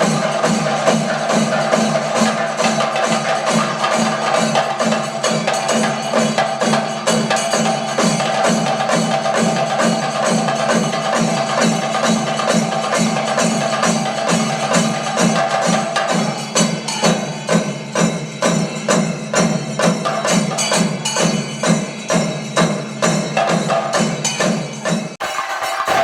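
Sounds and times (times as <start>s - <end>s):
cymbals ringing: 0.0s - 26.0s
rapid drumming: 0.0s - 26.0s.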